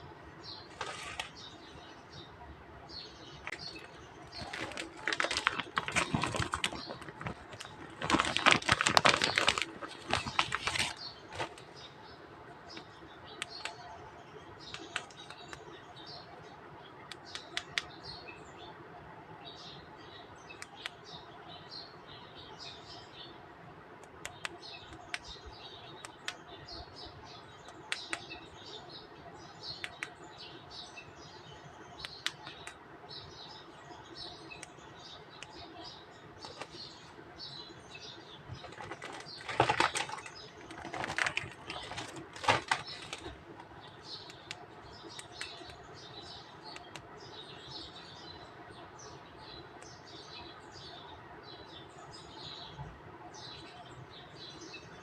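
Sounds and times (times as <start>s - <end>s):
rustling bursts: 38.5s - 43.5s.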